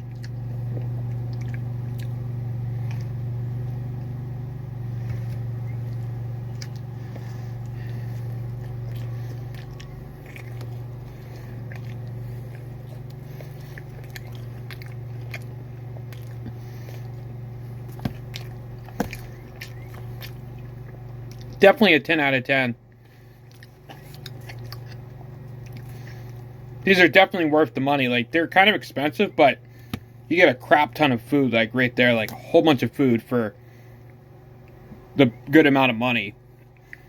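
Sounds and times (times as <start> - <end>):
person chewing food: 0.0 - 21.6, 22.8 - 26.8, 29.6 - 30.3, 36.4 - 37.0
low steady hum: 0.0 - 37.0.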